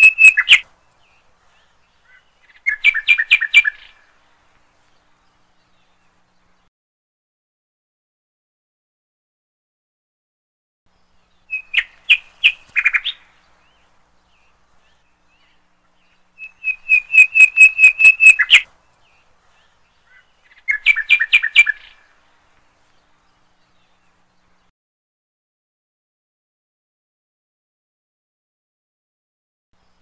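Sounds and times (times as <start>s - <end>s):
bird chirping rapidly: 0.0s - 0.7s, 1.6s - 4.0s, 10.9s - 22.1s.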